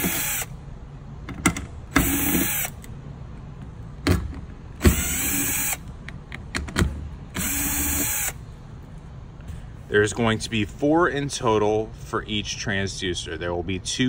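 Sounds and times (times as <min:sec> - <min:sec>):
power driver motor: 0:00.0 - 0:00.6, 0:01.9 - 0:03.0, 0:04.7 - 0:06.0, 0:07.3 - 0:08.4.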